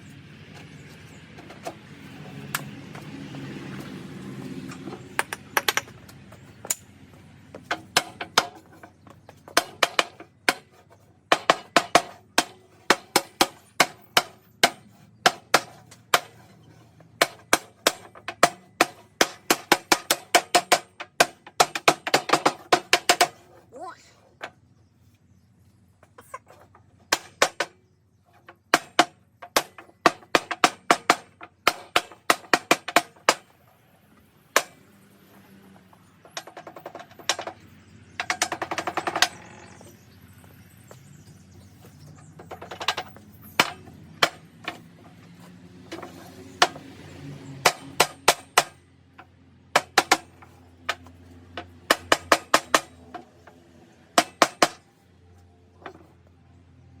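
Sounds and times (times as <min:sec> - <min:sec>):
sharp knocks and taps: 0:04.7 - 0:06.9.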